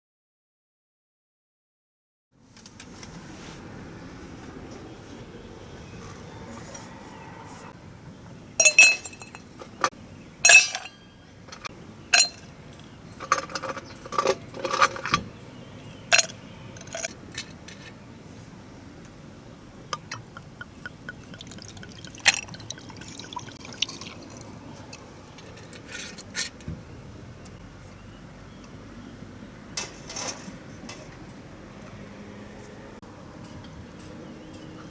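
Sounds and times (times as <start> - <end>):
cookware and utensils clinking: 8.6 - 9.8, 10.4 - 12.6, 16.1 - 17.8, 19.9 - 26.5.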